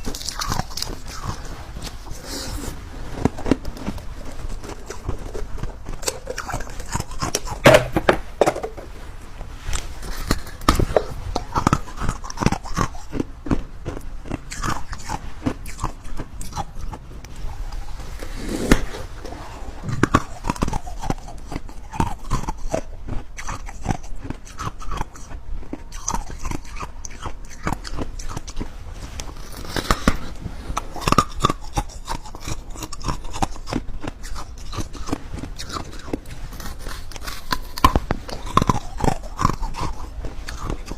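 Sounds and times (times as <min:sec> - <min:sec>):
biting and chewing crunches: 0:00.0 - 0:08.8, 0:09.7 - 0:19.0, 0:19.8 - 0:40.9
wet mouth clicks: 0:09.8 - 0:17.9, 0:19.9 - 0:40.9.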